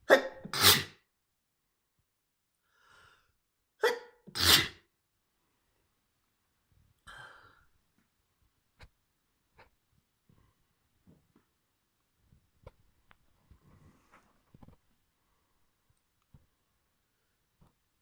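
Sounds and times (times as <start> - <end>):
woman sneezing: 0.0 - 1.0, 3.8 - 4.8
faint breath: 2.6 - 3.4, 7.0 - 7.8.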